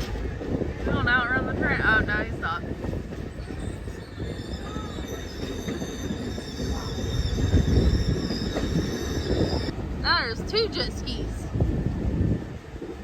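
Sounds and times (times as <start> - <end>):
low rumble of train cars: 0.0 - 13.0
train wheels squealing on rails: 2.9 - 9.7.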